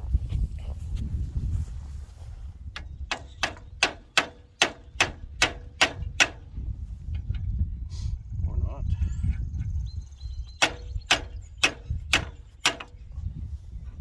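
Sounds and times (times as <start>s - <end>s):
sharp evenly spaced taps: 2.8s - 6.4s, 10.6s - 13.0s.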